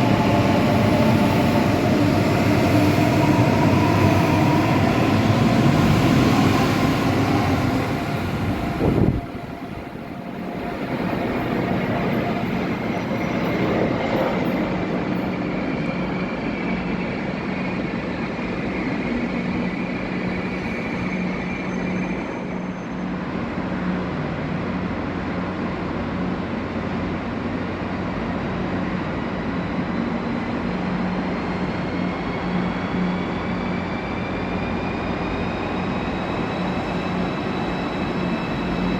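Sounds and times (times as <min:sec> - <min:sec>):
train rumble: 0:00.0 - 0:17.1.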